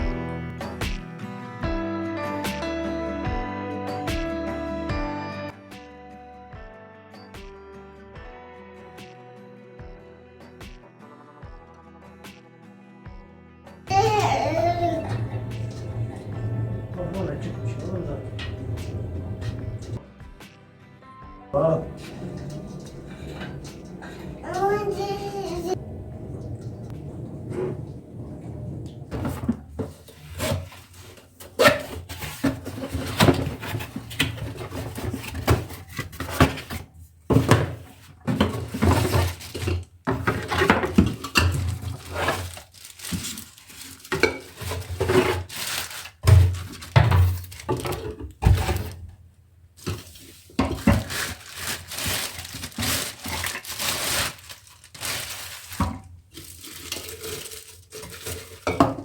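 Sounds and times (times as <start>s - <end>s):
dishes and utensils clattering: 14.0s - 20.0s, 21.8s - 42.5s, 44.0s - 45.5s, 49.9s - 53.9s, 56.6s - 59.0s
rustling: 41.6s - 49.0s, 49.8s - 58.7s.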